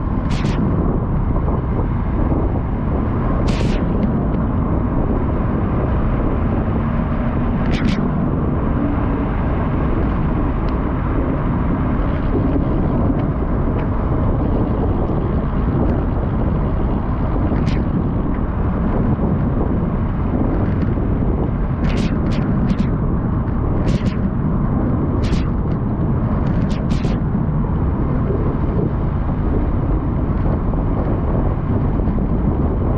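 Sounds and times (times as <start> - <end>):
wind buffeting microphone: 0.0 - 32.9
sharp clicks: 0.3 - 0.7, 3.5 - 4.1, 7.6 - 8.1, 23.8 - 24.3, 26.4 - 27.2.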